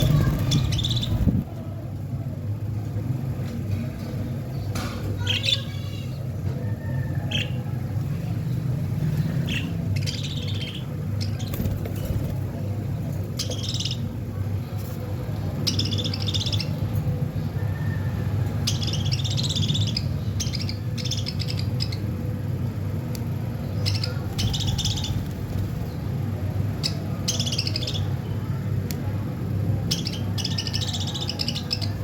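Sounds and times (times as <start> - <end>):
steady low hum: 0.0 - 32.0
budgerigars chirping: 9.2 - 12.2, 13.4 - 14.1, 15.6 - 16.8, 18.7 - 22.0, 23.8 - 25.4, 26.8 - 28.1, 29.9 - 32.0.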